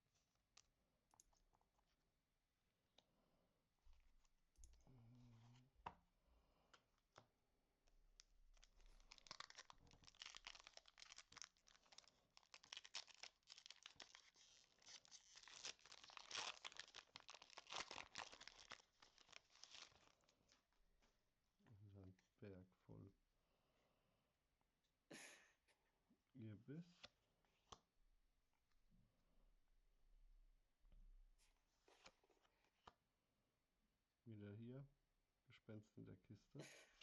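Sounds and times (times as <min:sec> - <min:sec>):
foil wrapper crinkling and tearing: 0:08.5 - 0:20.2.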